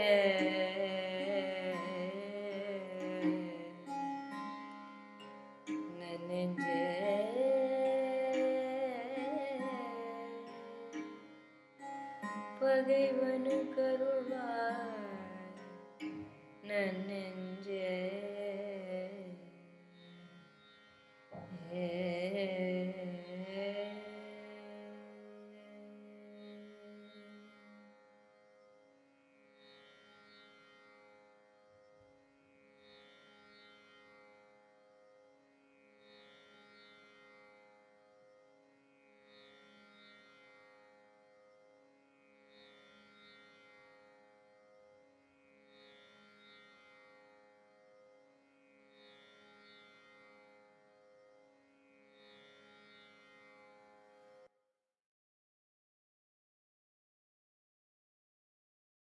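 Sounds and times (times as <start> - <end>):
tanpura drone: 0.0 - 54.5.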